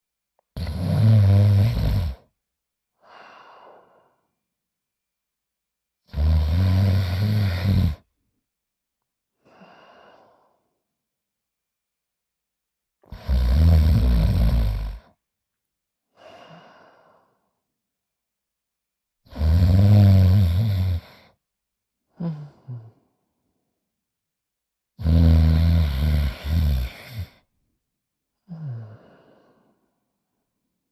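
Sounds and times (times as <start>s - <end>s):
cartoon character snoring: 0.6s - 2.3s, 6.1s - 8.1s, 13.1s - 15.2s, 19.3s - 21.4s, 22.2s - 23.0s, 25.0s - 27.4s
quiet breath out: 3.0s - 4.4s, 9.4s - 10.8s, 16.1s - 17.6s, 22.1s - 23.3s, 28.4s - 30.1s.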